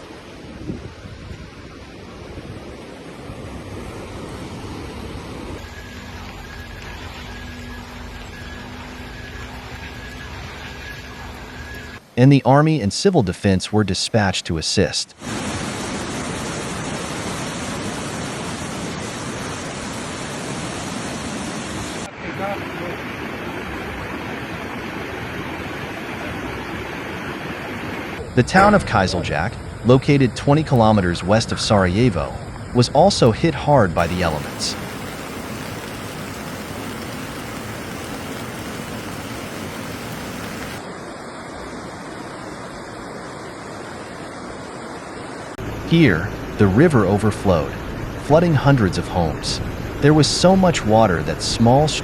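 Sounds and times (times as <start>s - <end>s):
floodwater rushing: 5.4s - 12.2s, 15.2s - 28.2s, 34.0s - 52.0s.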